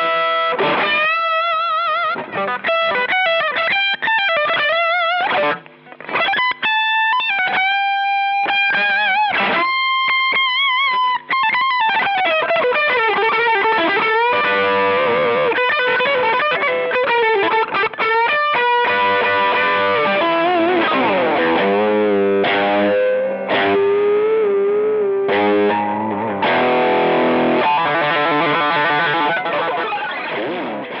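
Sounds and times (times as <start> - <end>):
overdriven electric guitar: 0.0 - 31.0.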